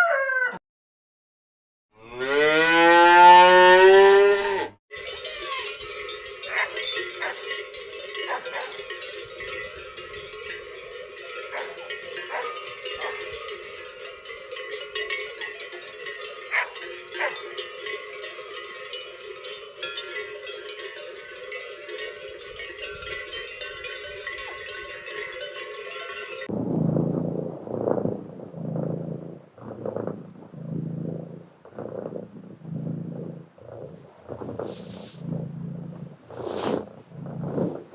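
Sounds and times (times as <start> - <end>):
cowbells ringing and clanking: 4.9 - 26.5.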